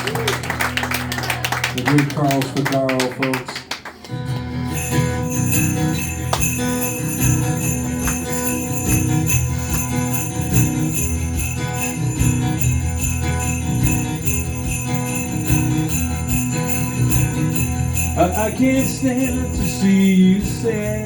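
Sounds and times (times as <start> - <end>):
live band playing: 4.4 - 21.0
sleigh bells shaken: 4.7 - 21.0.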